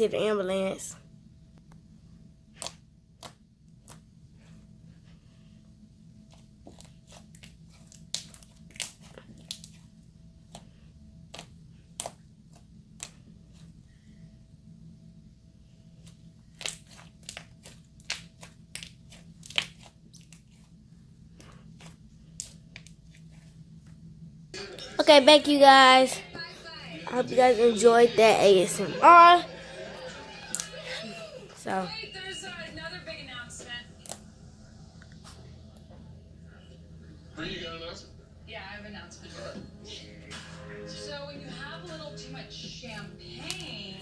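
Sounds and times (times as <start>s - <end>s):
faint steady hum: 0.0s - 44.0s
slime popping and crackling: 6.7s - 9.8s, 16.5s - 20.6s.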